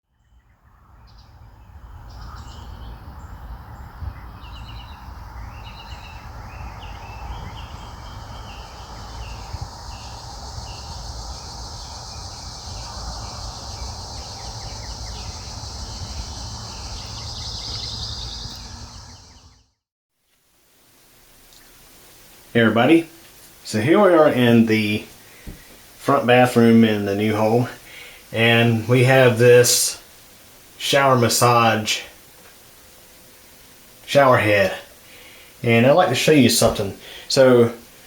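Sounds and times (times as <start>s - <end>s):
small birds chirping: 0.1s - 19.8s, 21.4s - 38.0s
low rumble and hiss: 20.5s - 38.0s.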